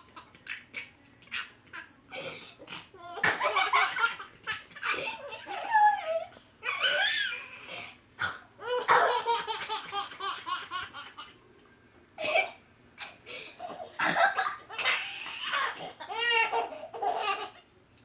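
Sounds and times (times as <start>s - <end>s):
baby laughing: 2.9s - 7.5s, 8.6s - 11.4s, 13.6s - 17.6s.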